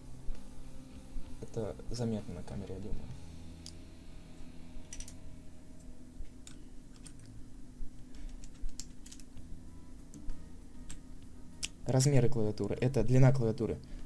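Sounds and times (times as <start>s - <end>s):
steady low hum: 0.0s - 14.0s
plastic keycaps clicking: 8.3s - 9.4s.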